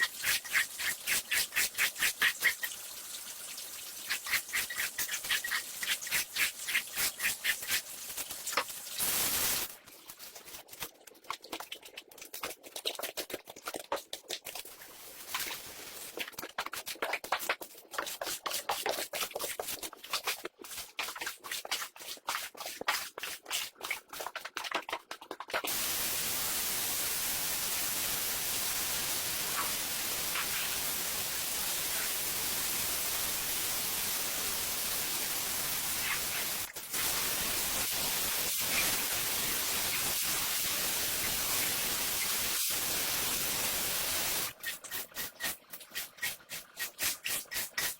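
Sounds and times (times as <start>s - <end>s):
cleaning machine hissing: 0.0s - 2.6s, 9.0s - 9.7s, 25.7s - 44.6s.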